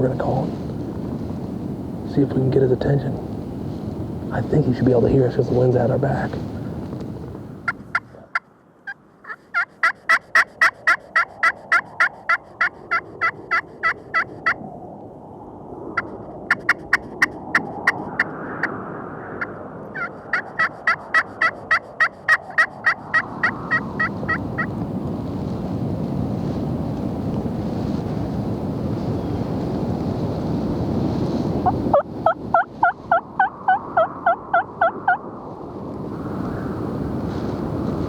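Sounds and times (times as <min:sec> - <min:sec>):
turkey call hen yelps: 0:07.9 - 0:14.6, 0:20.0 - 0:24.7, 0:31.9 - 0:35.2.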